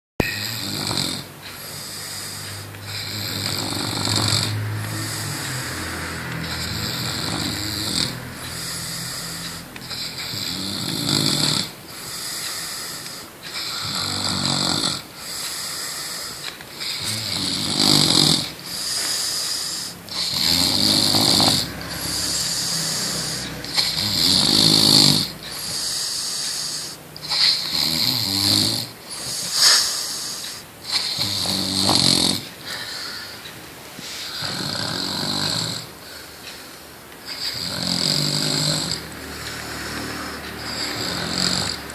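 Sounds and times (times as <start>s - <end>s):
low rattling snore: 0.2s - 33.3s, 34.2s - 41.9s
hissing breath: 1.4s - 14.6s, 15.2s - 17.3s, 17.9s - 27.7s, 29.1s - 31.2s, 39.0s - 41.9s.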